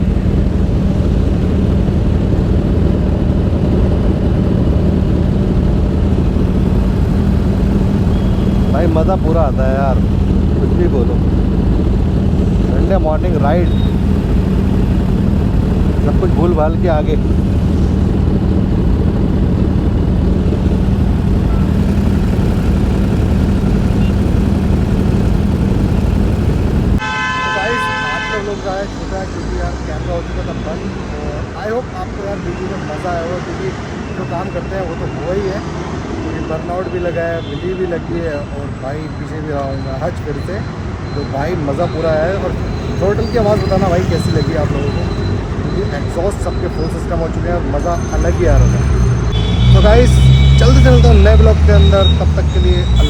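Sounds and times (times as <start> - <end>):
motorcycle engine cruising: 0.0 - 27.1, 39.2 - 53.0.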